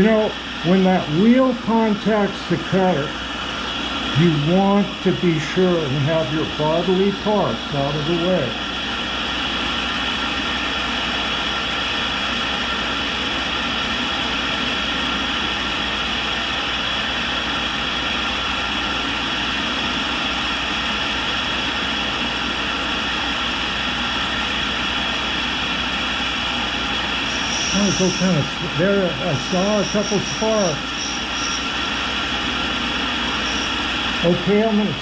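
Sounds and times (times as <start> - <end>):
grinding wheel whining: 27.0 - 34.5.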